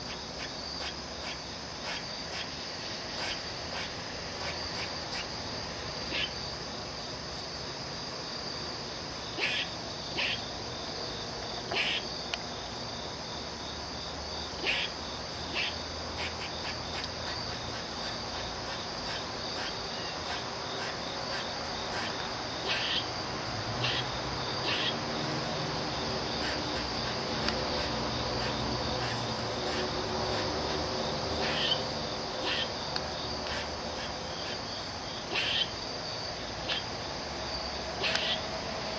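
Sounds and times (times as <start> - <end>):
squirrel alarm calls: 0.0 - 5.4, 6.0 - 6.4, 9.3 - 10.5, 11.7 - 12.2, 14.5 - 23.1, 23.8 - 25.2, 26.4 - 30.8, 31.4 - 32.8, 33.4 - 34.6, 35.2 - 35.8, 36.6 - 36.9, 38.0 - 38.5
high insect drone: 0.0 - 38.9.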